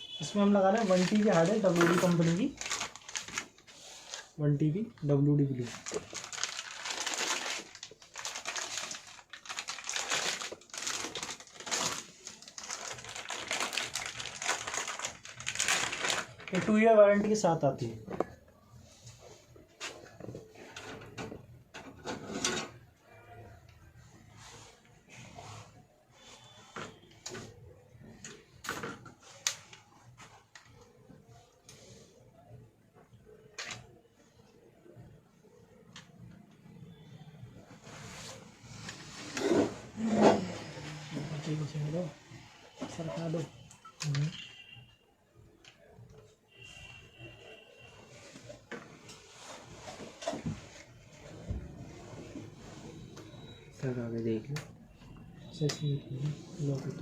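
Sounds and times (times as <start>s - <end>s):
plastic packaging crinkling: 0.2s - 17.2s
hands handling computer parts: 0.3s - 17.4s, 26.6s - 32.2s.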